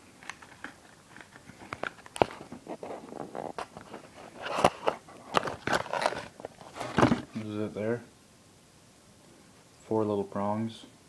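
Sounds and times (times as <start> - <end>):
packaging clicks and rustling: 0.2 - 7.5.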